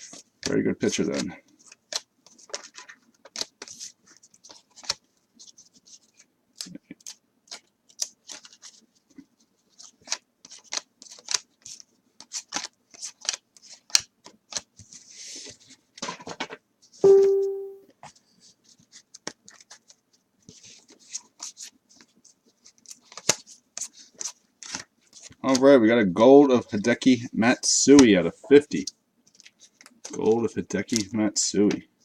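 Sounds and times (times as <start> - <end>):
cards clicking and rustling: 0.1 - 15.1, 18.9 - 25.7, 29.3 - 31.8
short loud pitched tone: 17.0 - 17.8.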